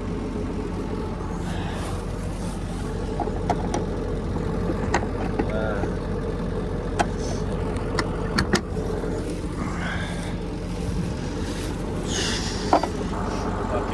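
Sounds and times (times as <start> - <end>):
tractor diesel engine running: 0.0 - 13.9
sharp clicks and knocks: 3.2 - 3.9, 4.6 - 5.6.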